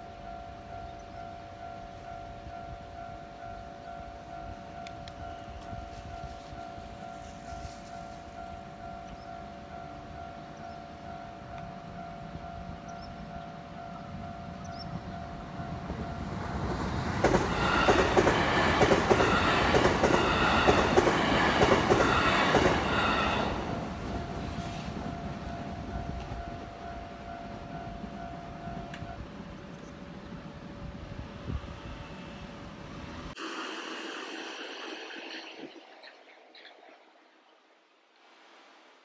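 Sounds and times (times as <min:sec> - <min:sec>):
train wheels clattering: 0:15.9 - 0:25.0
level crossing warning bell: 0:25.1 - 0:29.3.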